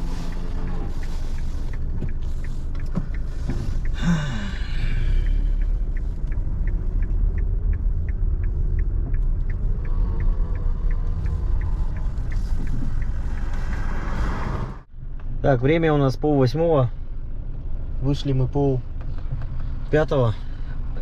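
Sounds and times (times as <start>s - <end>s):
indicator relay ticking: 0.0s - 14.2s
car engine and road rumble: 0.0s - 21.0s.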